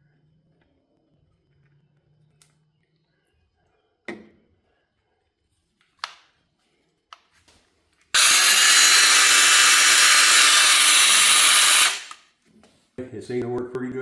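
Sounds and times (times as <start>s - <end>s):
mini chainsaw whirring: 8.2s - 12.2s.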